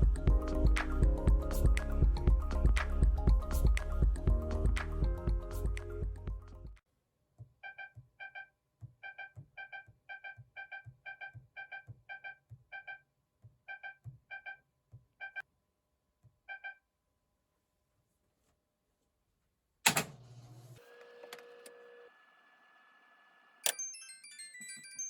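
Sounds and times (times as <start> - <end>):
electronic tune: 23.7 - 25.0.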